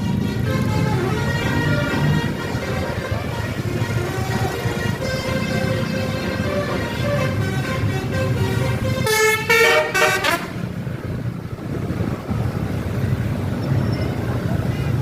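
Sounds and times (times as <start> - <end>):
multi-tone air horn tune: 0.0 - 10.6
bus engine rumble: 0.0 - 15.0.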